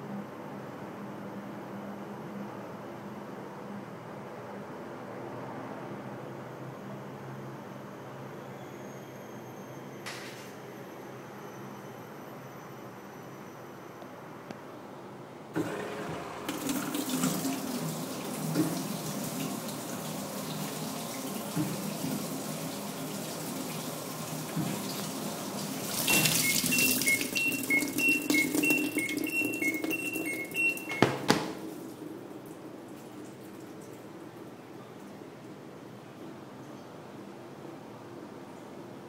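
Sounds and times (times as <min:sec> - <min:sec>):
water rushing in washing machine: 0:15.6 - 0:34.5
short electronic beeps: 0:26.0 - 0:31.3.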